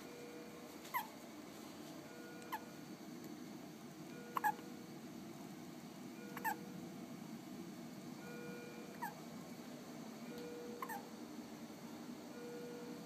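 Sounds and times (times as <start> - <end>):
baby hiccuping: 10.8 - 11.0.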